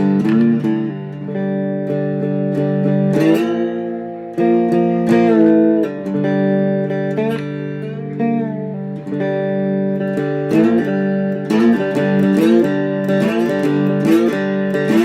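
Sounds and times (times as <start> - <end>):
slide guitar: 0.0 - 15.0.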